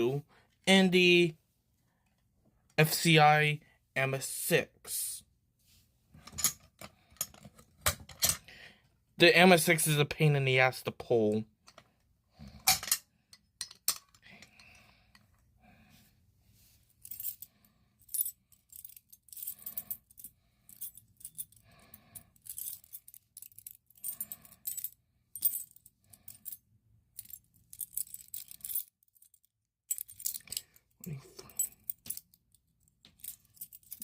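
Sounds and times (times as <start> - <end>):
metal keys jangling: 17.0 - 26.6, 27.2 - 34.0.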